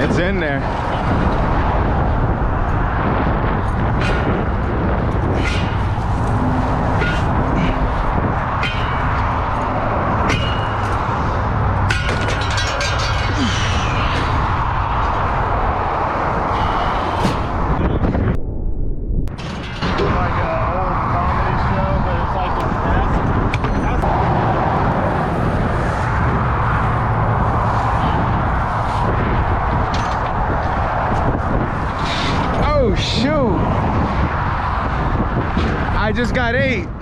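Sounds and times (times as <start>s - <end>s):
highway traffic roar: 0.0s - 37.0s
knocks and clatter: 0.7s - 15.5s, 19.3s - 20.5s, 22.4s - 27.1s, 27.9s - 32.6s.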